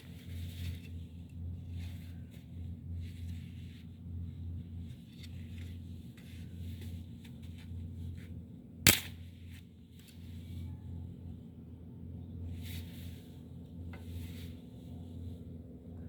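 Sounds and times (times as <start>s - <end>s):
low steady fire rumble: 0.0s - 16.0s
sharp loud crack: 8.9s - 9.2s.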